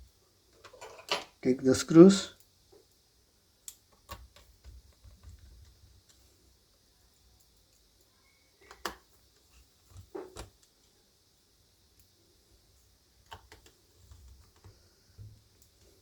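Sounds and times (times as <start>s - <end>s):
small laptop parts clicking: 3.7s - 6.2s, 13.2s - 14.8s.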